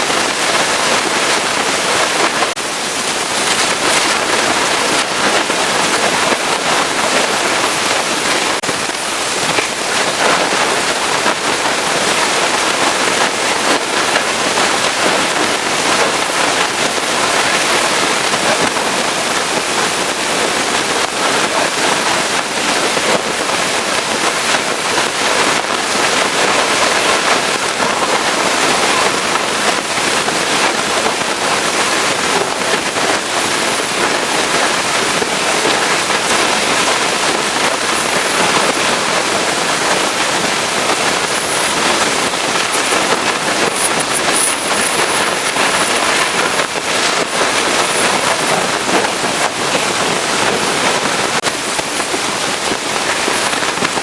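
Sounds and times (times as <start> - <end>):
pressure washer spraying water: 32.8 - 50.0.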